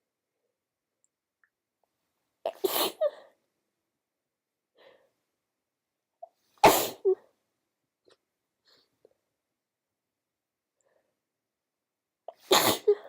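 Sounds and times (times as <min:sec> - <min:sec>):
faint breath: 0:04.8 - 0:05.2
woman sneezing: 0:06.6 - 0:07.2, 0:12.4 - 0:13.0.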